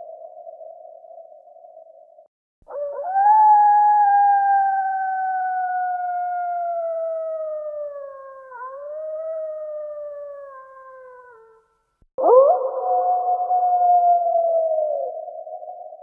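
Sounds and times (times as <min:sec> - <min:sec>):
coyote howling: 0:02.7 - 0:11.6.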